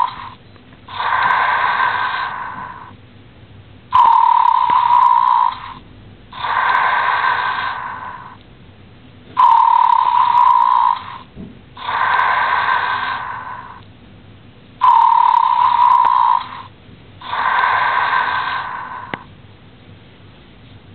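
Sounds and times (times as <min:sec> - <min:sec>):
toy buzzing snore tone: 0:00.0 - 0:02.9, 0:03.9 - 0:08.4, 0:09.4 - 0:13.8, 0:14.8 - 0:19.3
breathy sound: 0:00.0 - 0:03.0, 0:04.0 - 0:08.4, 0:09.4 - 0:13.8, 0:14.8 - 0:19.3.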